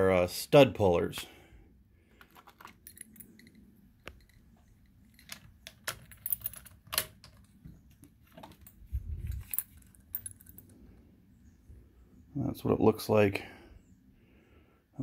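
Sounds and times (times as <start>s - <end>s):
metal tools clicking and tapping: 2.2s - 8.7s.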